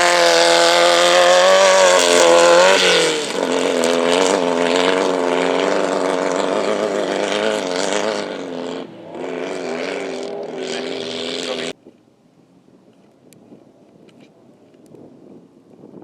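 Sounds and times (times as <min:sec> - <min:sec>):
race car engine running hard: 0:00.0 - 0:11.8
faint wind: 0:00.0 - 0:16.0.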